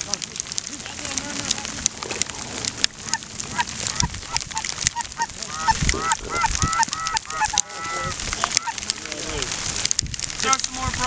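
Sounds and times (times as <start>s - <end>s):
geese honking: 2.3s - 9.4s.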